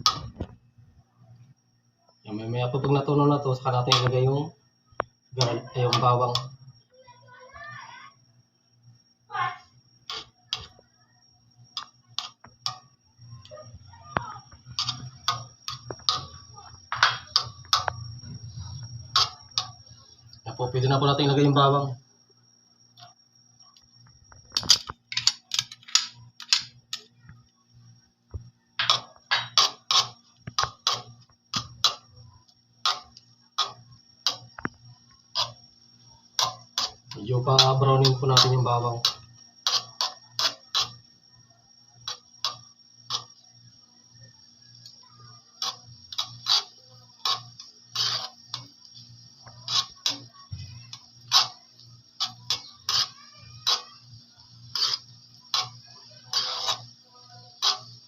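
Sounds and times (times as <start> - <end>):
faint steady hum: 0.0 - 58.0
sharp popping: 11.7 - 20.4, 28.3 - 41.1, 44.8 - 58.0
garlic frying in butter: 28.8 - 32.1, 32.8 - 41.1, 44.5 - 58.0.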